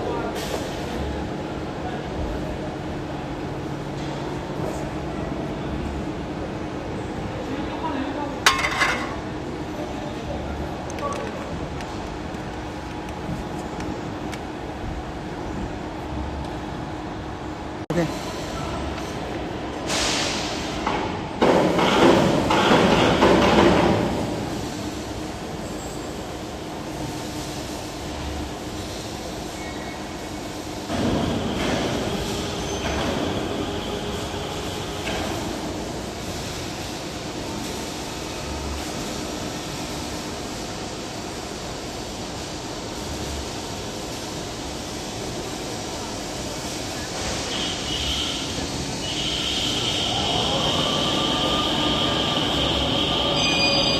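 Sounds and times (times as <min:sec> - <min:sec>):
high machine whine: 0:47.1 - 0:53.9.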